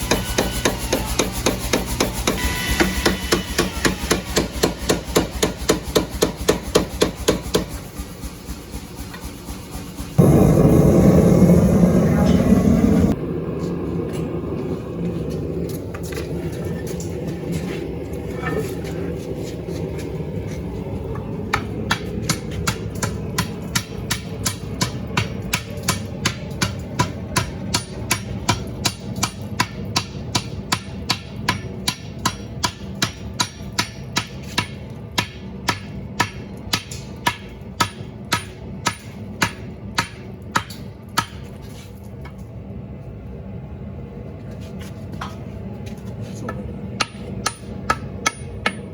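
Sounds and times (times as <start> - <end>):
low machine hum: 0.0 - 48.9.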